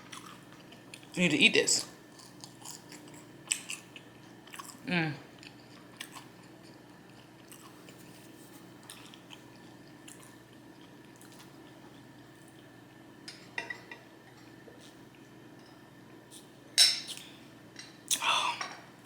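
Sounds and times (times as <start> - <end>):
person chewing food: 0.0 - 1.2, 2.1 - 12.8, 14.7 - 17.4.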